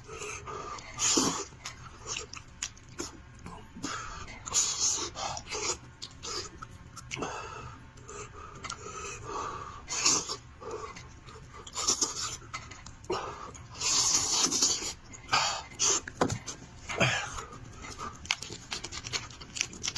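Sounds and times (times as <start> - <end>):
wet chewing and smacking: 0.7 - 7.2, 17.4 - 19.9.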